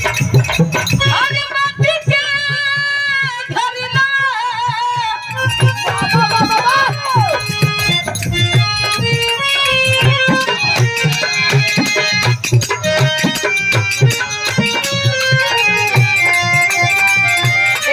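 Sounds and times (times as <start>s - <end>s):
hand drums beating: 0.0s - 17.9s
sustained melody line: 5.1s - 17.9s.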